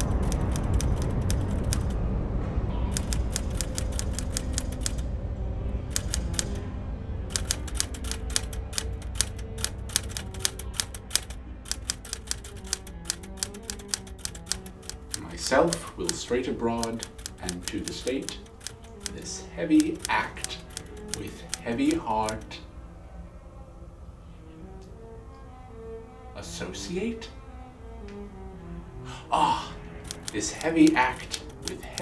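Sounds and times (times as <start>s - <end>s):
typewriter keys clacking: 0.0s - 2.0s, 2.9s - 5.1s, 5.9s - 6.6s, 7.3s - 22.6s, 29.9s - 32.0s.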